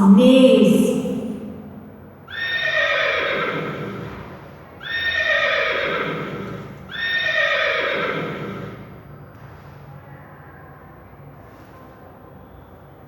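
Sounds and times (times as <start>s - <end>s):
horse neighing: 2.3s - 9.0s.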